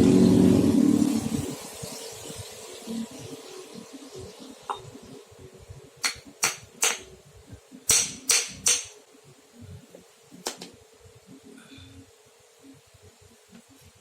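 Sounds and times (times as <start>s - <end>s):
hammer striking metal: 6.0s - 7.1s, 7.9s - 9.0s.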